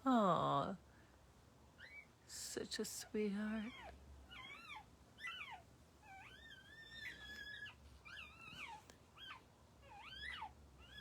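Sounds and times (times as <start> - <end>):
puppies squealing and whimpering: 1.8 - 2.1, 4.3 - 11.0.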